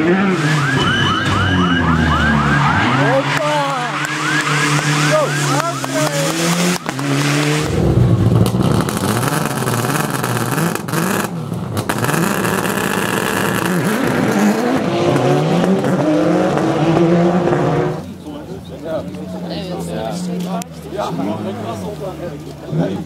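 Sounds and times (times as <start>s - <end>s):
rally car engine revving: 0.0s - 18.2s.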